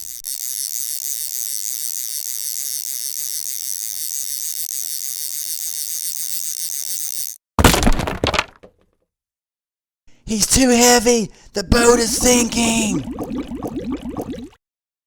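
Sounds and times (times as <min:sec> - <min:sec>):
small electric motor whine: 0:00.0 - 0:07.4.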